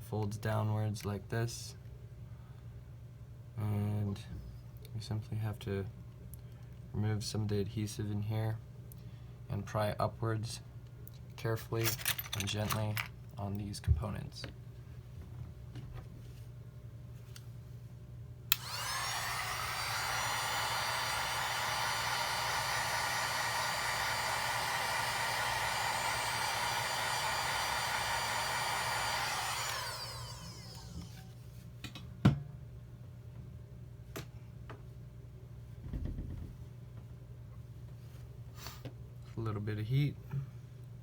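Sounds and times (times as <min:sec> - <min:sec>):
heat gun fan whining: 0:18.5 - 0:31.4.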